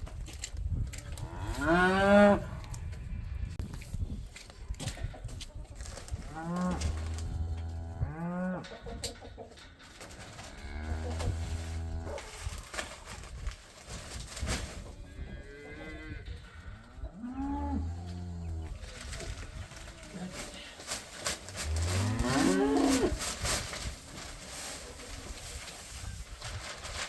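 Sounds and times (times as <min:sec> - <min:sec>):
cattle mooing: 0:10.4 - 0:12.2, 0:17.2 - 0:18.8, 0:21.6 - 0:23.2.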